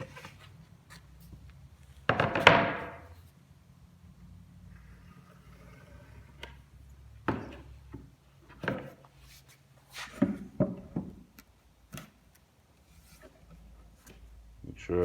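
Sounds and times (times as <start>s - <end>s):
boards knocking and clattering: 2.1s - 3.1s, 7.2s - 9.0s, 10.2s - 11.2s.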